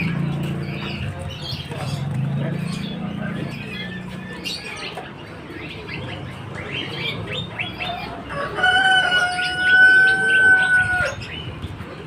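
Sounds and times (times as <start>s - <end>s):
caged birds chirping: 0.0s - 12.0s
rooster crowing: 8.3s - 11.2s.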